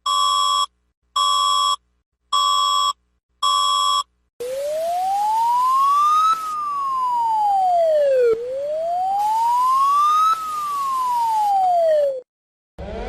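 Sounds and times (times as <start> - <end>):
rising and falling siren tone: 4.4 - 13.0.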